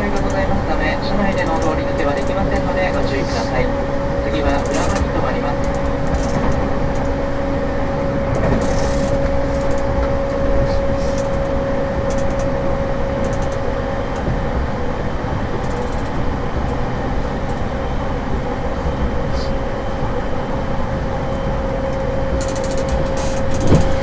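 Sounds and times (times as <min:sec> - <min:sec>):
steady whine: 0:00.0 - 0:24.0
train running rumble: 0:00.0 - 0:24.0.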